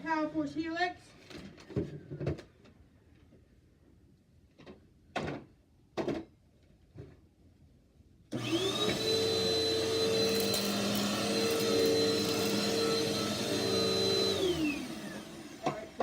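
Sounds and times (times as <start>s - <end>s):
vacuum cleaner motor running: 8.3s - 16.0s.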